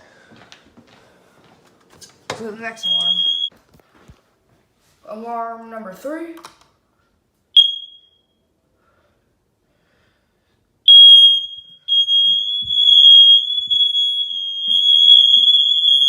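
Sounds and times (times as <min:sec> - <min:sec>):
smoke alarm chirp: 0:02.7 - 0:03.5, 0:07.6 - 0:08.5, 0:10.9 - 0:16.0
smoke alarm high-pitched tone: 0:02.7 - 0:03.5, 0:07.6 - 0:08.5, 0:10.9 - 0:16.0.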